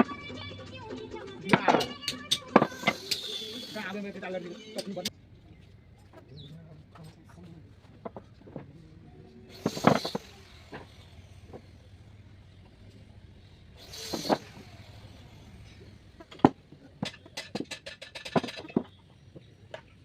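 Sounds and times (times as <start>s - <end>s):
wood rasping strokes: 9.4s - 19.9s.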